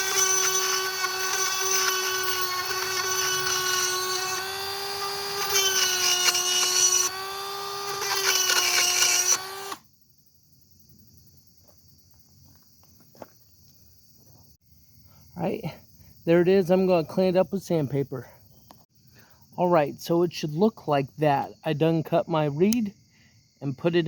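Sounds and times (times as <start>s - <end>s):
electric power tool whining: 0.0s - 9.8s.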